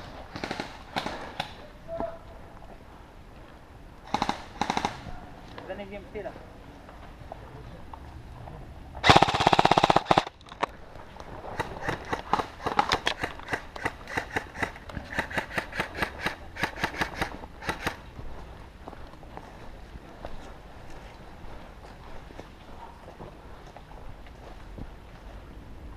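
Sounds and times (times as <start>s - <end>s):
airsoft rifle full-auto burst: 4.1s - 5.0s, 9.0s - 10.3s, 11.8s - 18.0s.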